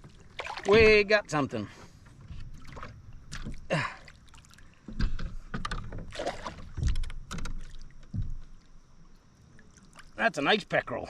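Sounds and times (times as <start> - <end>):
knocks and bumps on kayak: 0.0 - 1.3, 1.9 - 3.7, 4.8 - 8.6.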